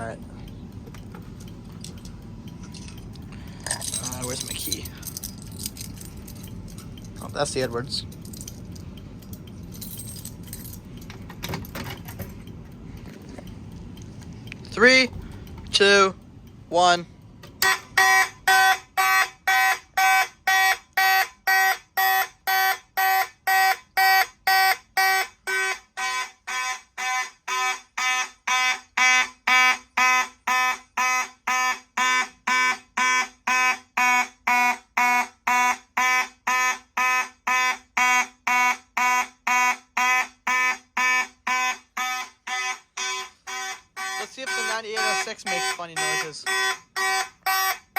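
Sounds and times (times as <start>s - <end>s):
fire alarm horn blasts: 17.6s - 47.9s.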